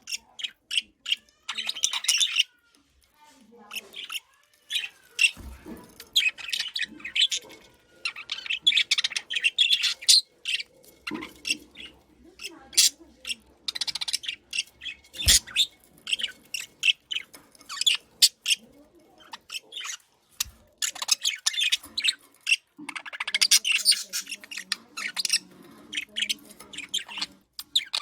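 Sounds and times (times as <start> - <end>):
high bird calls: 13.7 - 18.6.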